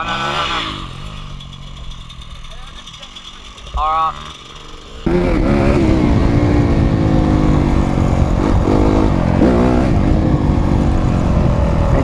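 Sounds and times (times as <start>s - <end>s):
dirt bike engine idling: 0.0s - 12.0s.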